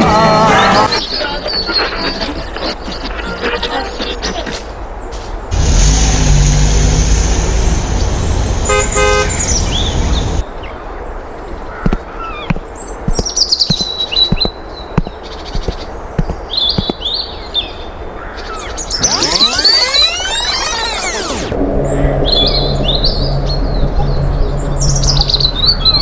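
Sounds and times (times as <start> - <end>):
loud rumbling traffic noise: 5.3 - 10.4
birds chirping: 6.8 - 26.0
sharp knocks or taps: 11.8 - 17.0.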